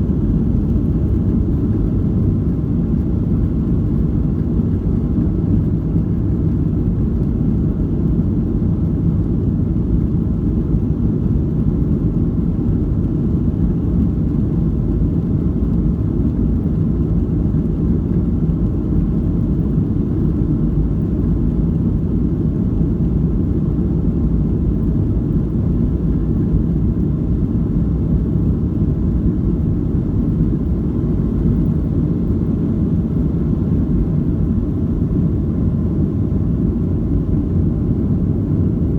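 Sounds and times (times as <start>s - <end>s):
airplane cabin engine rumble: 0.0s - 38.9s.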